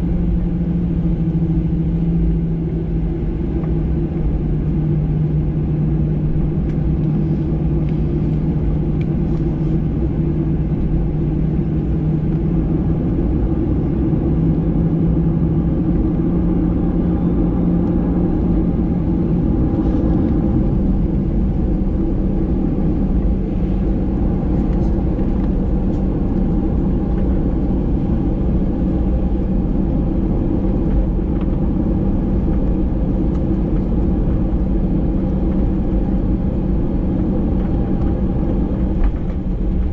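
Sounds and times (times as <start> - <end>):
jet engines in airplane cabin: 0.0 - 39.9.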